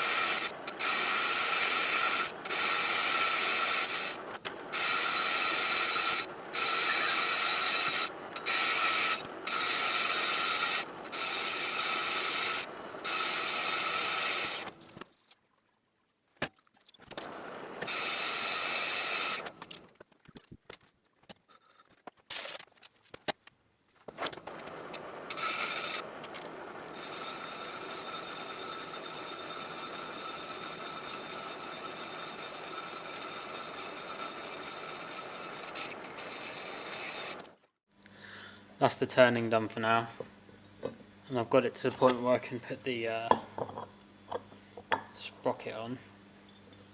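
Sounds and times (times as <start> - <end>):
metal lathe whirring: 0.0 - 14.7, 25.1 - 37.5.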